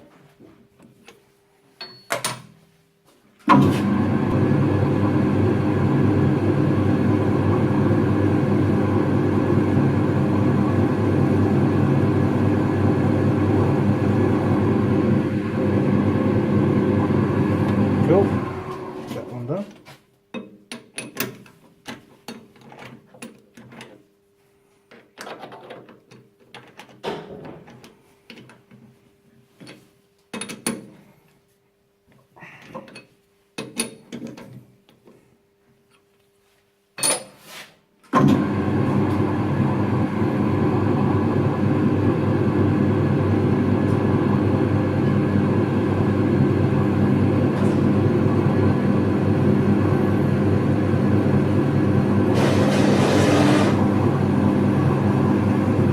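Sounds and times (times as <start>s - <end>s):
power drill running: 52.3s - 53.9s.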